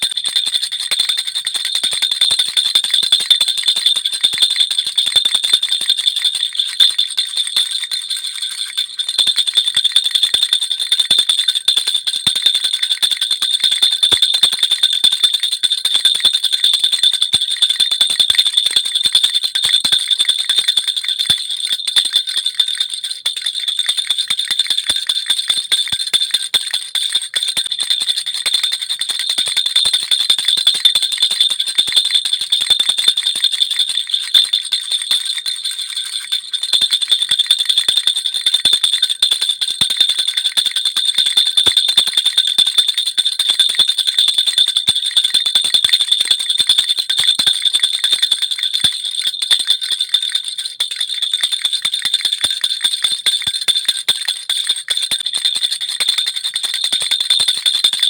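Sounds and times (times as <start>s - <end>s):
baby rattle jingling: 0.0s - 11.5s, 17.5s - 39.1s, 54.4s - 58.0s.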